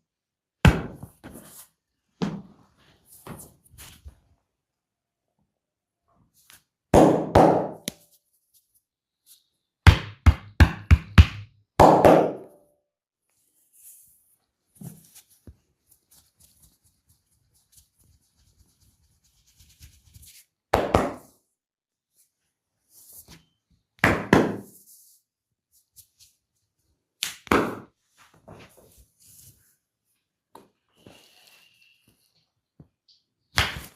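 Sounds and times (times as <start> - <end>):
hands slapping on body: 27.2 - 27.9.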